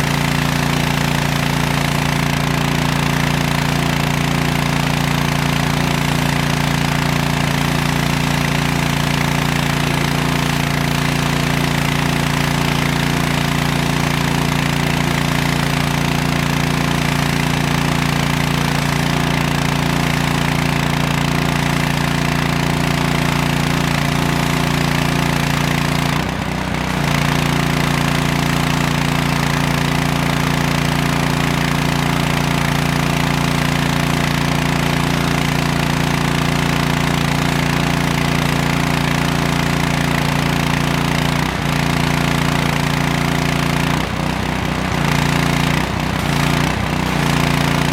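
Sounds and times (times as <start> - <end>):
small engine running at full throttle: 0.0 - 47.9.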